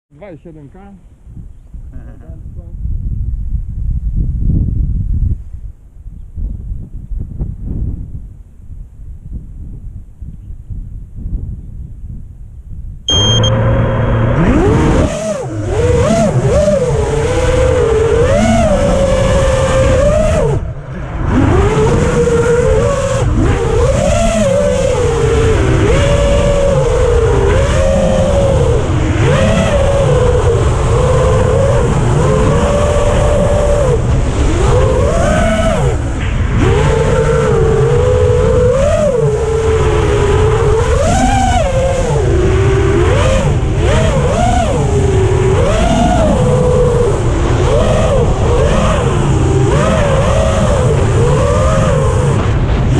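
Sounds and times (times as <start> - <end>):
short high beep: 13.1 - 14.1
drone motors whining: 13.1 - 52.9.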